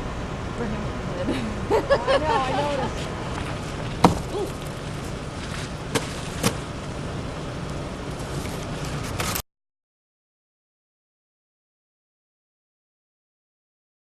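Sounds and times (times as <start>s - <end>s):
steady background noise: 0.0s - 9.4s
sharp knocks: 4.0s - 4.4s.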